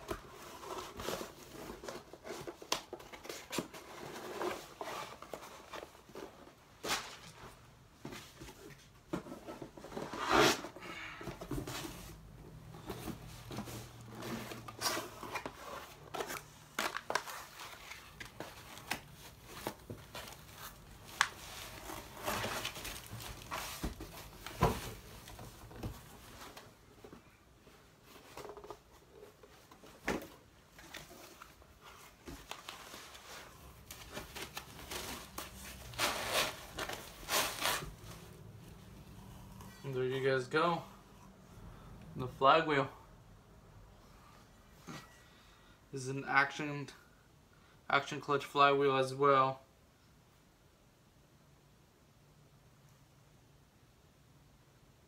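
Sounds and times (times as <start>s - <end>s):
packaging rustling and crinkling: 11.5s - 26.8s, 28.1s - 38.6s.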